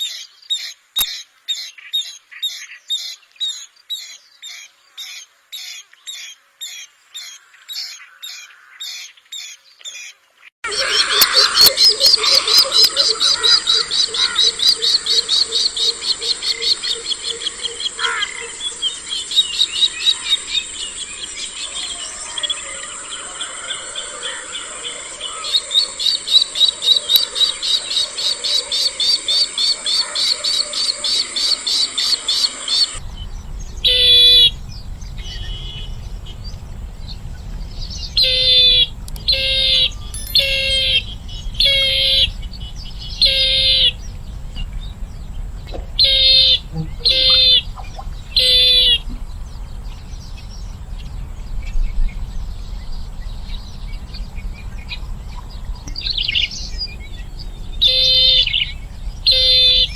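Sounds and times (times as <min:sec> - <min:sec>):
birds piping calls: 0:00.0 - 0:52.2, 0:53.4 - 0:59.9
steady low rumble: 0:33.0 - 0:59.9.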